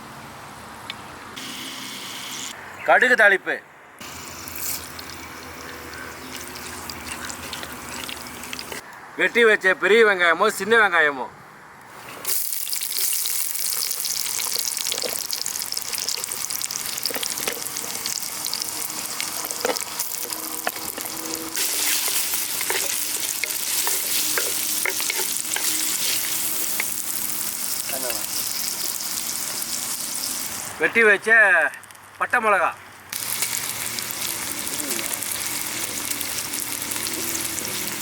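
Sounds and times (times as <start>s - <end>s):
onions sizzling in oil: 12.2s - 30.7s, 33.1s - 38.0s
stirring in a pot: 19.2s - 27.1s.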